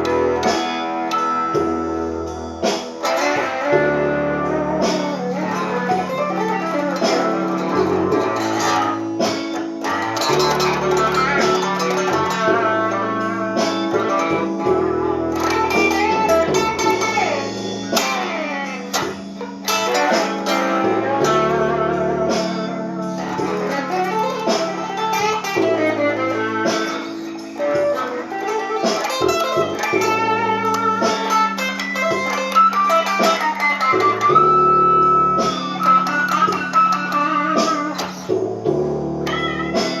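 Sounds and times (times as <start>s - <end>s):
blues guitar playing: 0.0s - 40.0s
sustained low bass notes: 9.8s - 18.0s, 20.6s - 24.3s.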